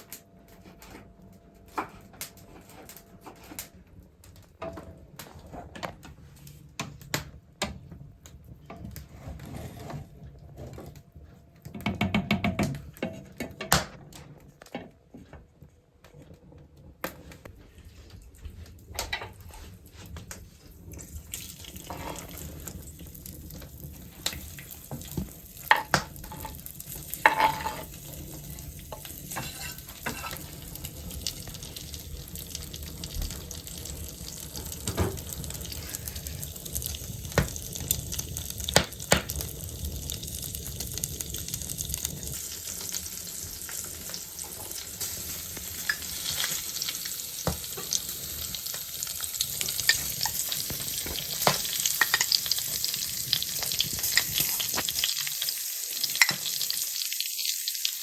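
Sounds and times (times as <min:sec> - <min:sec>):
food sizzling in a pan: 0:20.8 - 0:58.0.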